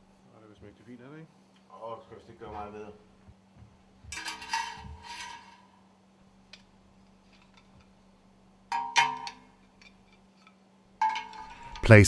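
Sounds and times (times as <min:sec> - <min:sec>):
faint steady hum: 0:00.0 - 0:12.0
metal scraping: 0:04.2 - 0:05.7, 0:11.0 - 0:12.0.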